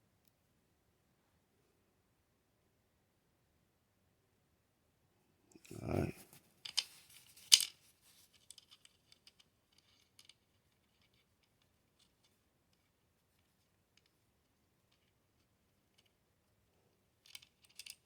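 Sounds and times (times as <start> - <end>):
small metal parts clicking: 8.4 - 11.4, 17.2 - 18.0.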